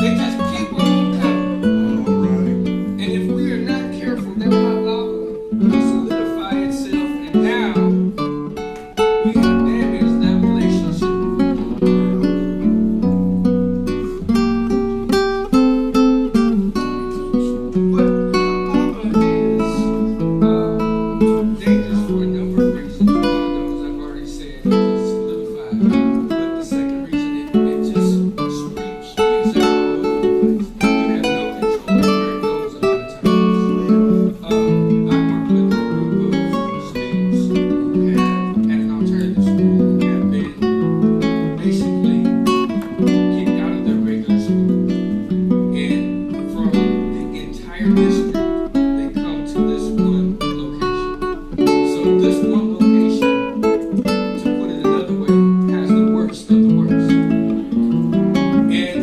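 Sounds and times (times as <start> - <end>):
acoustic guitar music: 0.0 - 59.0.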